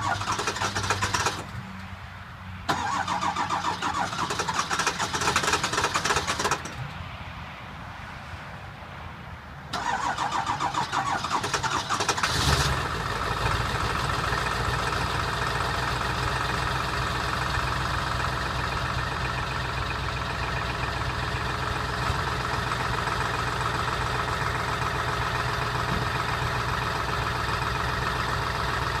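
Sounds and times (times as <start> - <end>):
starter motor cranking: 0.0 - 1.5, 2.7 - 6.7
diesel engine idling: 0.0 - 1.6, 2.7 - 6.8, 9.8 - 29.0.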